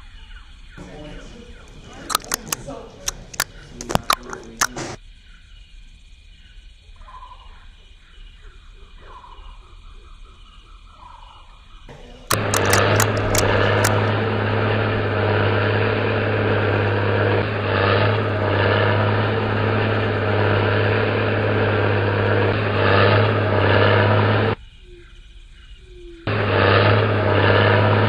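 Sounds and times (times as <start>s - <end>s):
loud engine running: 0.8s - 5.0s, 11.9s - 24.6s, 26.2s - 28.0s
sharp clicks: 1.6s - 5.0s, 12.2s - 14.1s.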